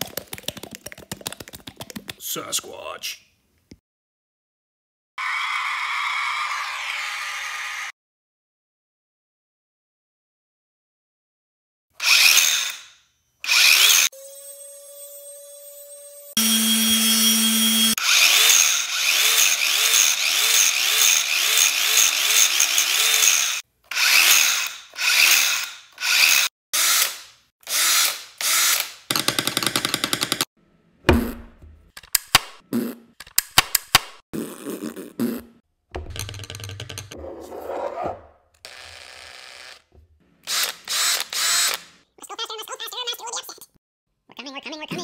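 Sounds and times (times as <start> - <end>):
power tool motor: 12.0 - 30.3, 38.6 - 42.0.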